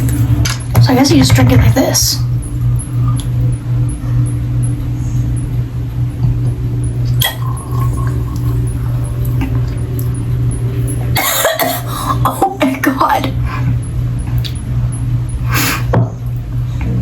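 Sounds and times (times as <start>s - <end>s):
steady low hum: 0.0s - 17.0s
person swallowing: 7.2s - 9.8s.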